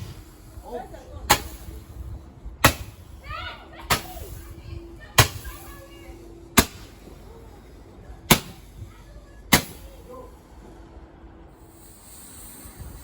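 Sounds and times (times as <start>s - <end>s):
fireworks banging: 0.0s - 0.5s, 1.2s - 3.3s, 3.9s - 4.6s, 5.2s - 5.8s, 6.6s - 7.4s, 8.3s - 8.9s, 9.5s - 10.1s.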